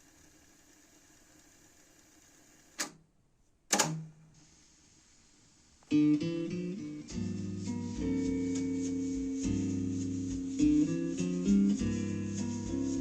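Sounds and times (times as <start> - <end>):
tape hiss: 0.0 - 3.0, 3.8 - 13.0
mechanical clicks: 3.7 - 4.0
acoustic guitar music: 5.9 - 13.0.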